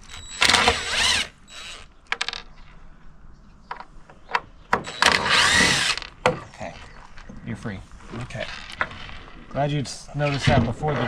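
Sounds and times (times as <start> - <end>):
cordless drill motor whining: 0.0 - 1.9, 4.8 - 6.1
clicks and knocks of screws: 0.0 - 2.6.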